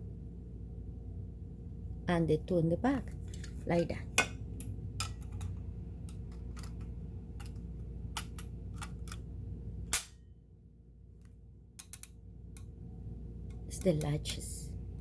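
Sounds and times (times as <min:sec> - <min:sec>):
small clicks and taps: 0:11.2 - 0:12.7.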